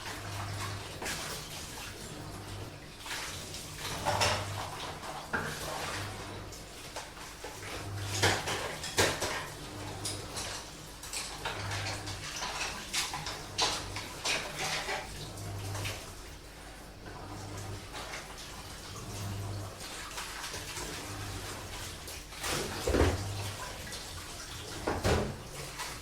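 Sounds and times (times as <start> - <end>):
running water: 0.0 - 26.0
washing machine pulsing hum: 0.0 - 26.0
dishes and cutlery clinking: 8.2 - 15.2.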